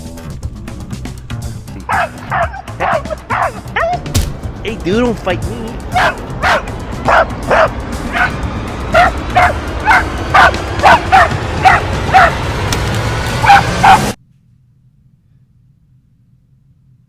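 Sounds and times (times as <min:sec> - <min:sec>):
dog yipping: 0:01.9 - 0:04.1, 0:06.0 - 0:12.4, 0:13.4 - 0:14.2
steady low rumble: 0:04.0 - 0:17.0.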